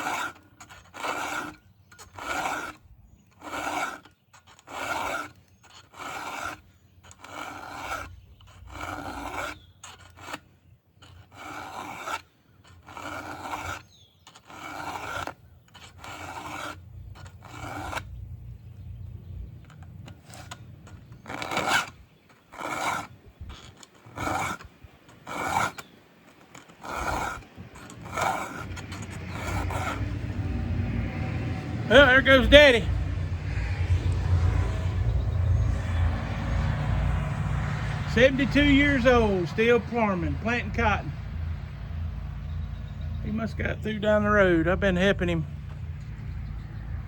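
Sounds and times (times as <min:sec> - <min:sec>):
file rasping on chainsaw chain: 0:00.0 - 0:47.0
low background rumble: 0:27.6 - 0:47.0.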